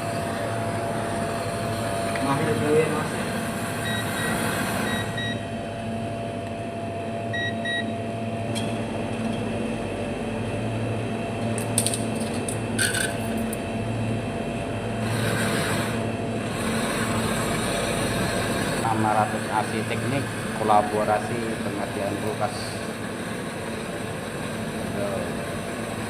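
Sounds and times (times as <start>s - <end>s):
refrigerator compressor humming: 0.0s - 26.0s.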